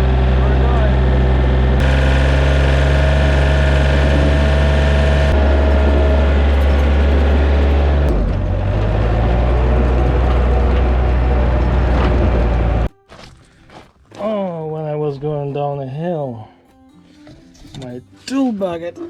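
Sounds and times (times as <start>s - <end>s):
diesel engine running: 0.0s - 12.9s.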